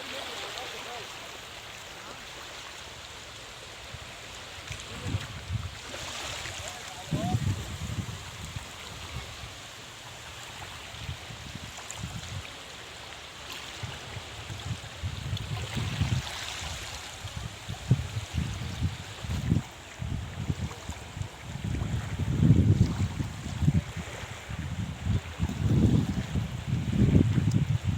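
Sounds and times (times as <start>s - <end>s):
sea water rushing: 0.0s - 27.9s
wind buffeting microphone: 3.9s - 9.7s, 10.8s - 12.4s, 13.8s - 27.9s.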